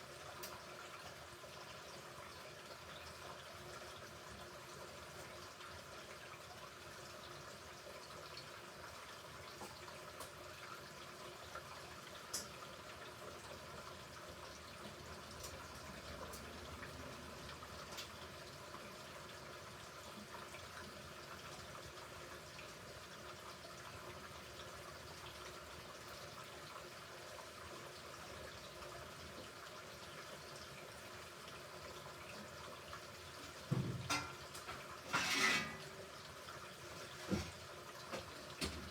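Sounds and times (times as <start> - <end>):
washing machine running water: 0.0 - 38.9.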